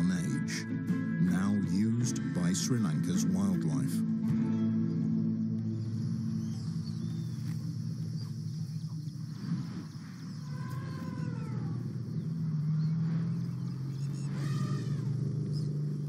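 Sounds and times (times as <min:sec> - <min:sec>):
steady low drone: 0:00.0 - 0:16.0
elephant call: 0:06.1 - 0:16.0.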